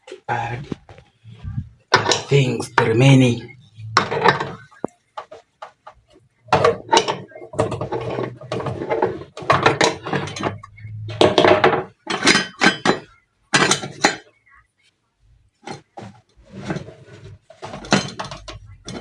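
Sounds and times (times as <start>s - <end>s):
pot and utensils clattering: 1.9s - 3.1s, 3.8s - 14.3s, 15.6s - 19.0s.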